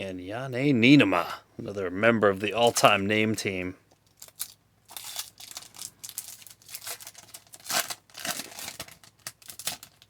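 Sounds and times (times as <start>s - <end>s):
card pack wrapper crinkling and tearing: 4.1s - 10.0s.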